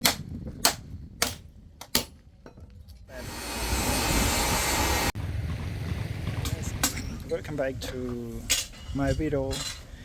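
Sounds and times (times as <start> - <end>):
rushing machine noise: 3.2 - 6.4.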